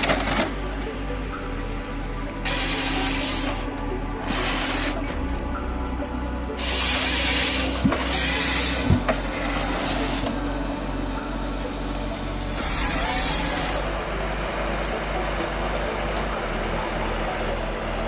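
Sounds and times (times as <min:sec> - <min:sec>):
harvester engine humming: 0:00.0 - 0:18.0
hissing bursts: 0:01.6 - 0:10.4, 0:12.2 - 0:14.2.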